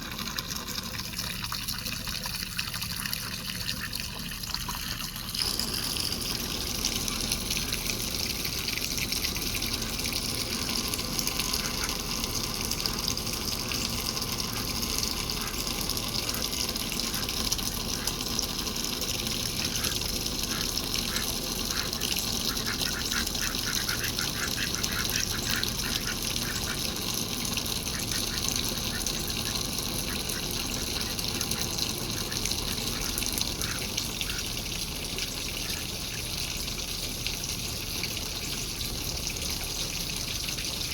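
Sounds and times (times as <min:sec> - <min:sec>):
water running and splashing: 0:00.0 - 0:40.9
ducks quacking: 0:11.5 - 0:12.1, 0:19.6 - 0:26.9, 0:27.9 - 0:34.5.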